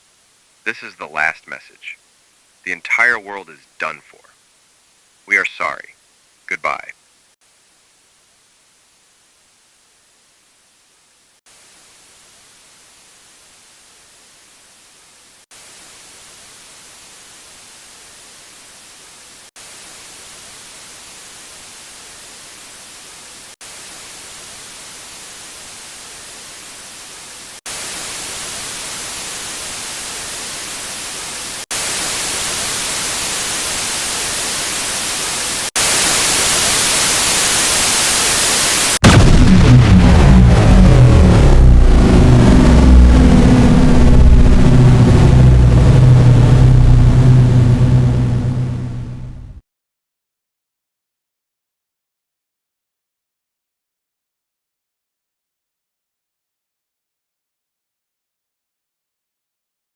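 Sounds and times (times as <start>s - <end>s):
static hiss: 0.0s - 39.3s, 40.6s - 49.6s
distorted blast: 37.8s - 49.6s
heavy low rumble: 39.0s - 49.6s.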